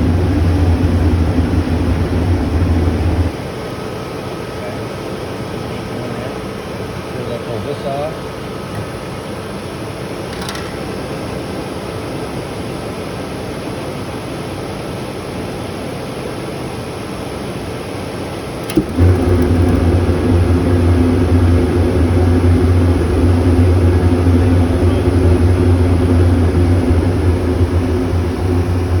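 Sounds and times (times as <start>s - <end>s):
loud low steady hum: 0.0s - 3.4s, 18.6s - 29.0s
furnace fan rushing: 0.0s - 4.0s, 18.1s - 29.0s
click: 18.6s - 19.9s.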